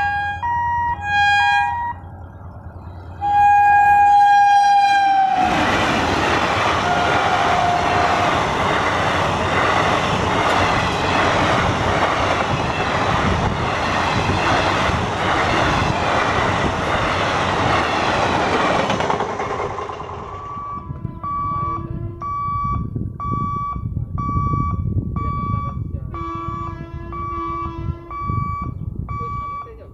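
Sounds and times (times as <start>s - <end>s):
train rumbling and wheel clatter: 0.0s - 29.9s
electronic warning beeper: 20.3s - 29.8s.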